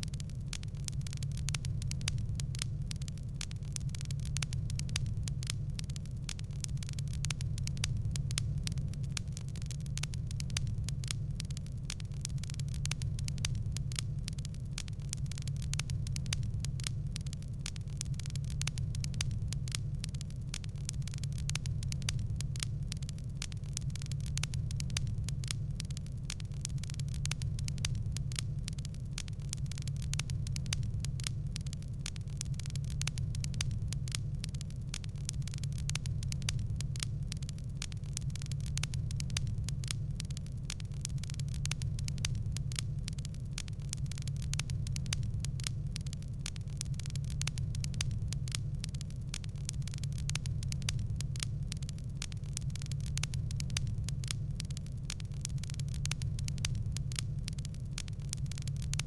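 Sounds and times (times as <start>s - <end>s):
low rumble of flames: 0.0s - 59.0s
wood fire crackling: 0.0s - 59.0s.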